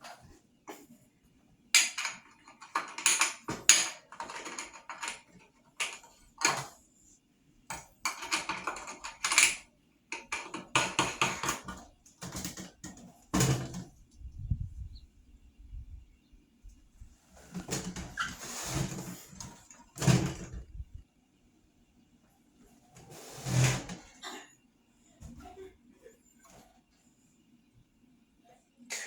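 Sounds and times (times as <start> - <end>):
small hard parts clattering: 1.8 - 6.7, 7.7 - 9.6.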